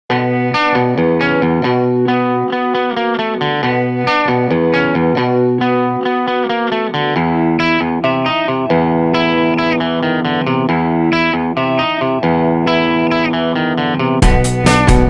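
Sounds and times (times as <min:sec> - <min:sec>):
plucked guitar music: 0:00.1 - 0:15.0
sustained bass: 0:14.2 - 0:15.0.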